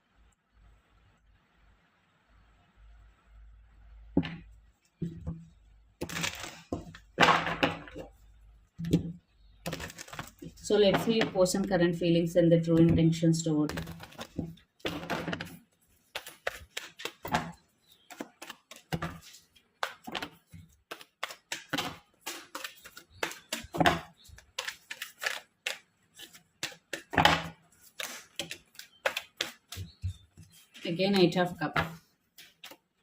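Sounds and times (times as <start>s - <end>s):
cards being shuffled: 6.0s - 7.0s, 9.6s - 11.0s, 13.7s - 32.8s.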